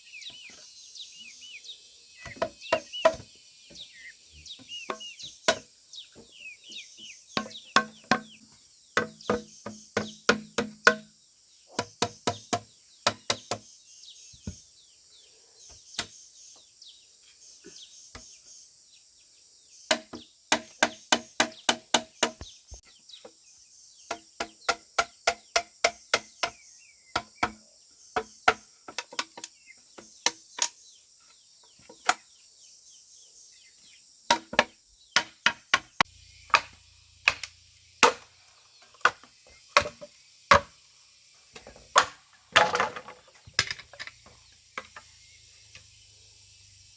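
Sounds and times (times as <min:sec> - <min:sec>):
hand tool striking bamboo: 0:04.6 - 0:05.7, 0:07.4 - 0:08.4, 0:09.0 - 0:11.1, 0:11.7 - 0:13.7, 0:19.9 - 0:22.5, 0:24.1 - 0:26.6, 0:27.2 - 0:27.6, 0:28.2 - 0:30.8, 0:34.3 - 0:38.3, 0:38.9 - 0:40.7.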